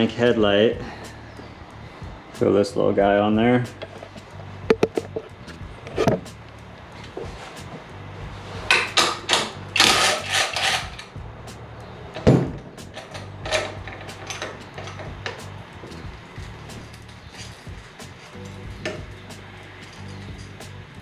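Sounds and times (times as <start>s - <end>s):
scraping noises: 3.6s - 6.4s, 7.0s - 8.9s, 9.8s - 11.1s, 12.8s - 20.8s.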